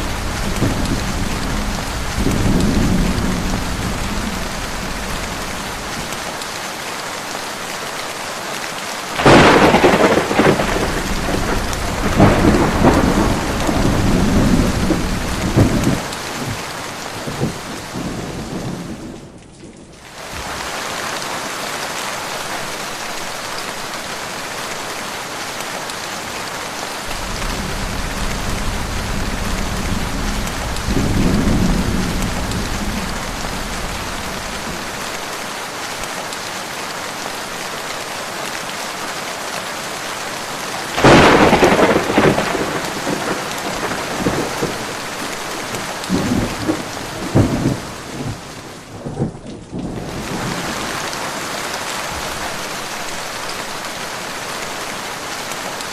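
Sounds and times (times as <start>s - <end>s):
loud thunderclap: 0.0s - 6.1s, 9.2s - 16.0s, 27.1s - 35.0s, 41.0s - 45.0s
thunder rumbling: 0.0s - 6.3s, 9.2s - 16.6s, 27.1s - 35.2s, 40.9s - 50.8s
heavy rain: 0.0s - 55.9s.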